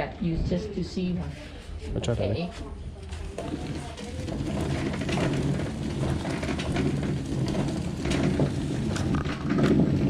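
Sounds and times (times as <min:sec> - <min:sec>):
hand mill grinding rice: 0:03.2 - 0:10.0.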